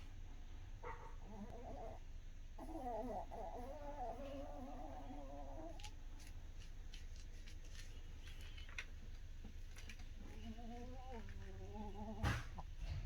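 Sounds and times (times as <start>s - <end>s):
dog snoring: 1.2s - 5.8s.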